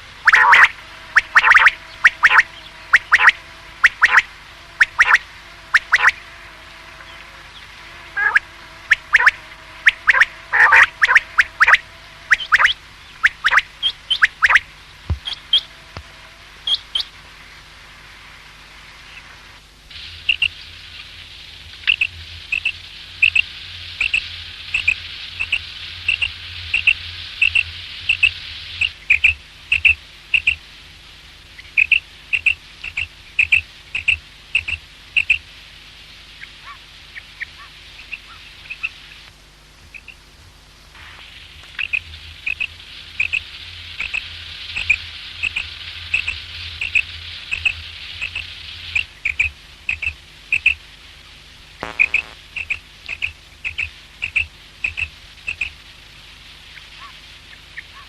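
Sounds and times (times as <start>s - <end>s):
quail calling: 0.0s - 6.2s, 8.1s - 15.7s
steady hiss: 0.0s - 58.0s.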